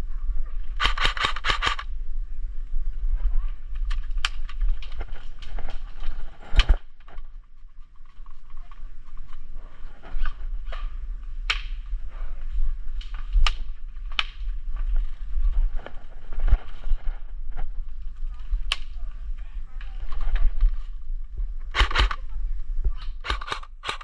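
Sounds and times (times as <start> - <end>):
low rumble on microphone: 0.0 - 0.8, 1.8 - 24.0
sharp clicks and knocks: 0.8 - 1.8, 21.7 - 22.2, 23.0 - 24.0.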